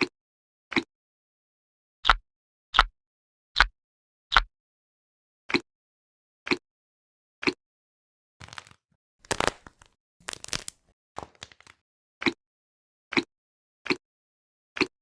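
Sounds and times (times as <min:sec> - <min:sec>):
crackly crunching squishing: 0:08.4 - 0:11.8
stress toys squishing: 0:08.4 - 0:12.4.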